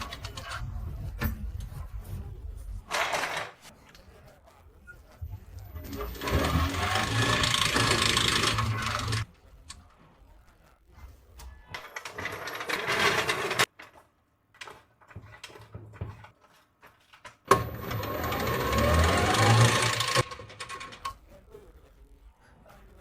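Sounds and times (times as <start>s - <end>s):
motor and gearbox whirring: 5.8s - 9.2s, 17.5s - 21.1s.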